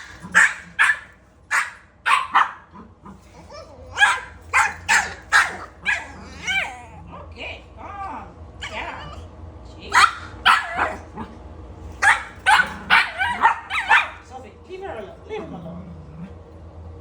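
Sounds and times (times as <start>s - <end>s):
dog barking: 0.0s - 2.7s, 4.0s - 6.7s, 9.9s - 11.1s, 12.0s - 14.2s.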